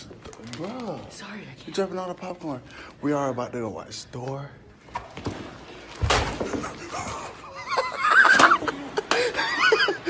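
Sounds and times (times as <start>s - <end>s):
person laughing: 7.4s - 10.0s.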